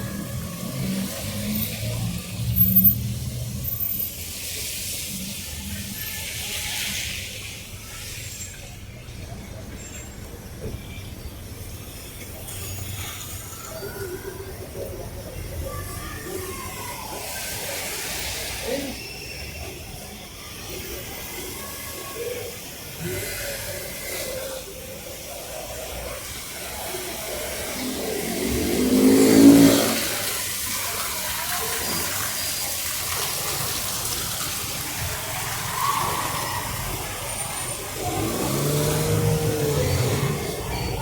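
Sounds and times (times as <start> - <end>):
vehicle engine passing: 26.2 - 30.7, 36.6 - 41.0.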